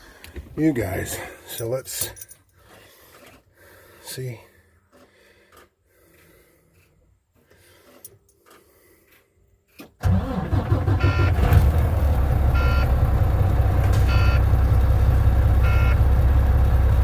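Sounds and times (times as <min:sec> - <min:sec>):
diesel truck engine idling: 0:10.1 - 0:17.0
beeping tone: 0:12.6 - 0:12.9, 0:14.1 - 0:14.4, 0:15.6 - 0:16.0.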